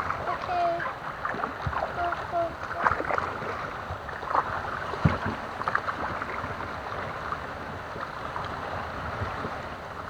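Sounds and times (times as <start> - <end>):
paddle dipping in water: 0.0 - 7.4.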